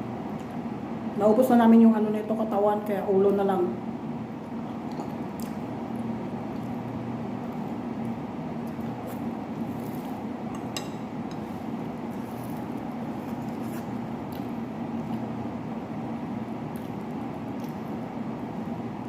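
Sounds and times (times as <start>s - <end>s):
steady low hum: 0.0s - 19.0s
tableware clink: 10.6s - 11.4s.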